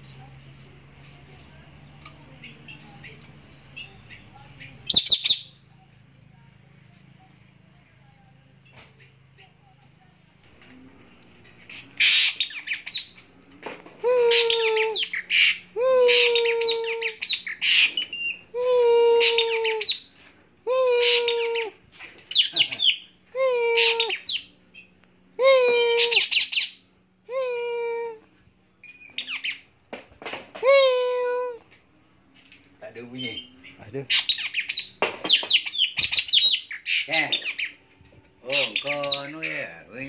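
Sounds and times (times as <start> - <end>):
bird calling with high chirps: 2.4 - 5.7, 11.8 - 13.3, 14.1 - 20.2, 20.9 - 24.9, 25.7 - 26.9, 28.8 - 29.8, 33.0 - 37.8, 38.4 - 39.7.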